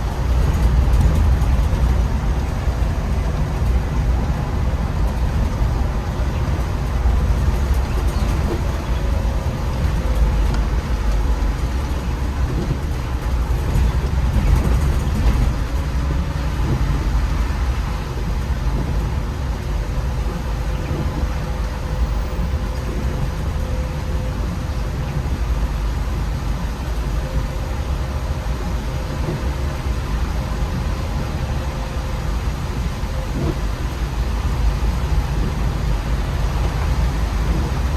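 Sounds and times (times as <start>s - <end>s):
bus engine rumble: 0.0s - 37.9s
road noise: 0.0s - 37.9s.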